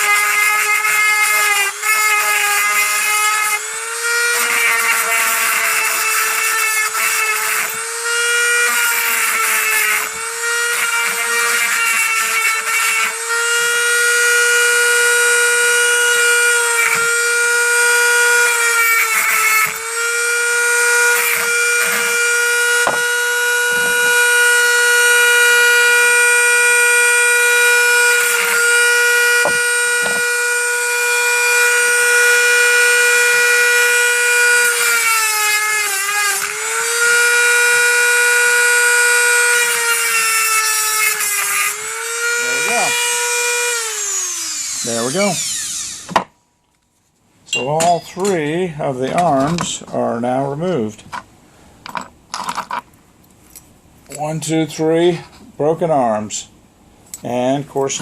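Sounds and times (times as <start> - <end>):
rotary tool grinding: 0.0 - 46.3.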